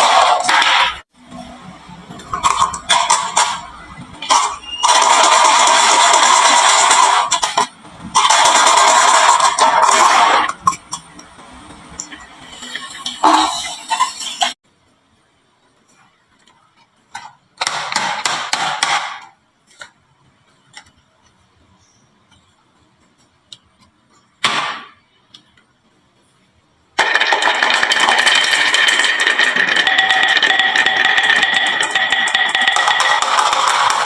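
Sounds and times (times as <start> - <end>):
marbles clattering down wooden run: 27.0 - 34.0
music: 32.3 - 34.0.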